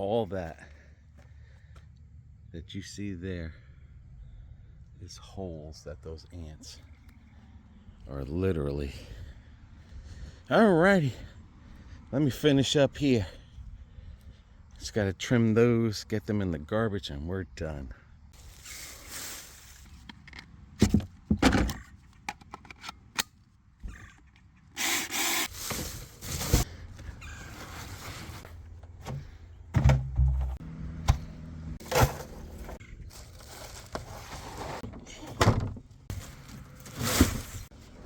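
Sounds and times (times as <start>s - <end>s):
leaves rustling: 18.4s - 20.0s, 31.8s - 34.8s
wood knocking and scraping: 28.8s - 32.8s.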